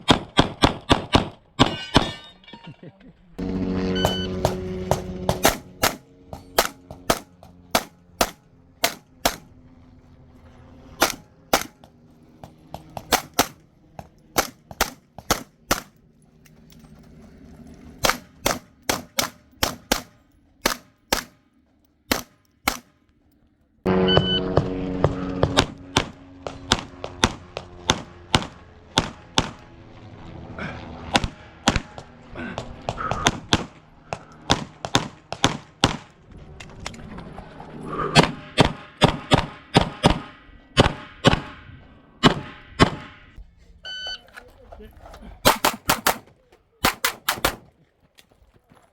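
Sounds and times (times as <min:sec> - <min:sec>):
pistol shots: 0:00.0 - 0:02.1, 0:04.1 - 0:09.5, 0:11.0 - 0:11.9, 0:12.7 - 0:16.0, 0:18.0 - 0:21.4, 0:22.1 - 0:23.0, 0:34.4 - 0:36.1, 0:38.2 - 0:43.2, 0:45.4 - 0:47.8.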